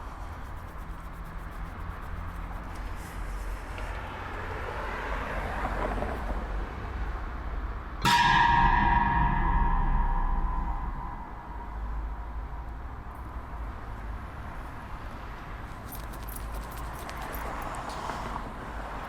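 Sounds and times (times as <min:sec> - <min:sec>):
metallic gong-like hit: 0:08.0 - 0:12.9
low droning rumble: 0:08.0 - 0:13.0.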